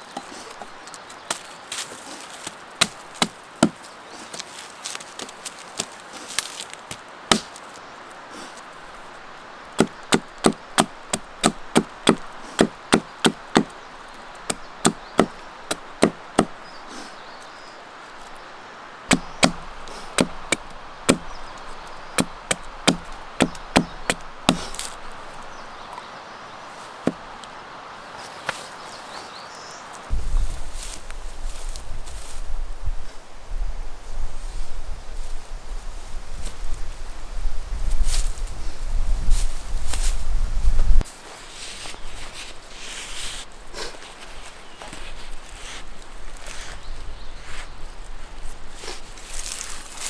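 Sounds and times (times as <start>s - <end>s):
faint steady hiss: 0.0s - 50.0s
sharp wooden chopping strikes: 2.8s - 3.8s, 6.9s - 7.8s, 9.8s - 13.8s, 14.5s - 16.6s, 19.1s - 21.5s, 22.1s - 25.0s.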